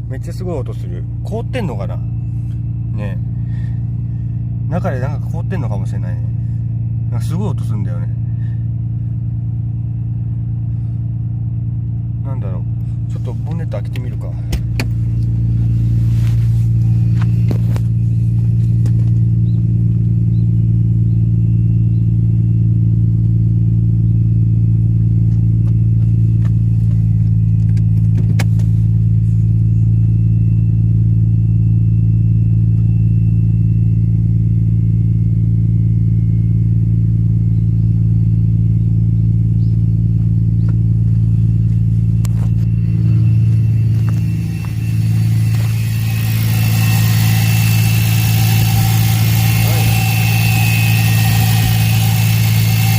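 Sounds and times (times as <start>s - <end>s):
car engine droning: 0.0s - 52.9s.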